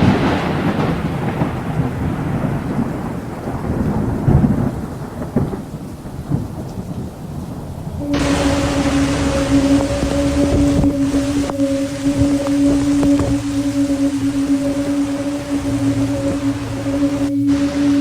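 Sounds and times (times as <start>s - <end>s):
steady rain: 0.0s - 18.0s
thunder rumbling: 0.0s - 18.0s
steady hum with held tones: 8.0s - 18.0s.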